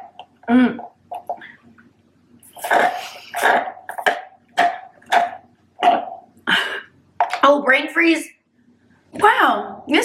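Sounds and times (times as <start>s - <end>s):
person slurping milkshake: 2.5s - 4.2s.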